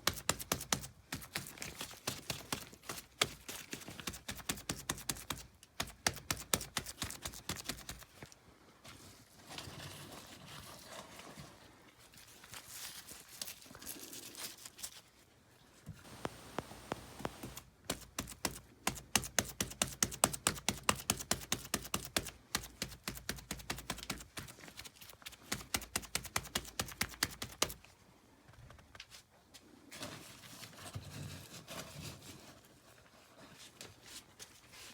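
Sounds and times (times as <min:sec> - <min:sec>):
soft scraping on plaster: 0:08.3 - 0:18.6, 0:28.6 - 0:34.9
rapid sharp clicks and taps: 0:16.1 - 0:24.5.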